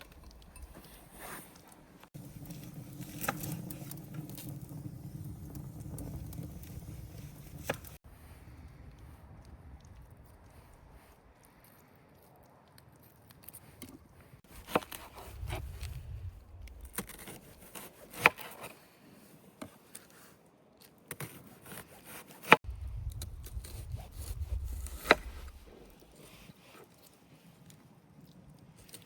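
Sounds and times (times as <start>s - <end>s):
rubbing and scraping on wood: 0.0s - 4.9s.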